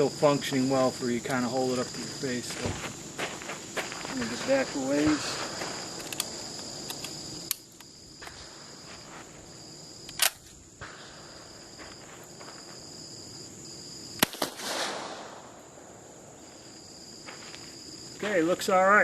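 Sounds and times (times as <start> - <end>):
insects trilling: 0.0 - 19.0
sharp click: 10.0 - 10.5
distant rifle shot: 14.2 - 15.9.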